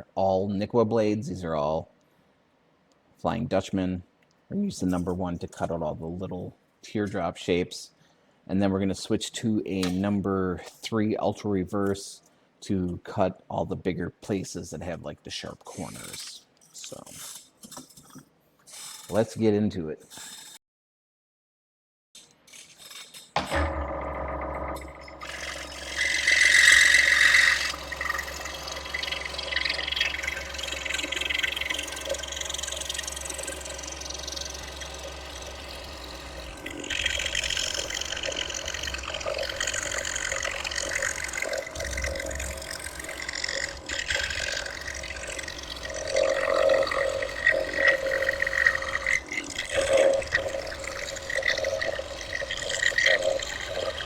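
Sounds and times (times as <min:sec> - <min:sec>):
scroll saw cutting wood: 0:22.5 - 0:54.0
low steady hum: 0:23.5 - 0:54.0.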